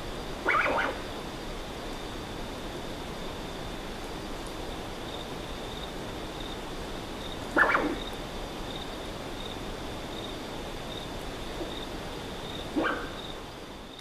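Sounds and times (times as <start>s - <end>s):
high insect chirping: 0.2s - 14.0s
possum wheezy calls: 0.4s - 1.1s, 7.6s - 8.1s.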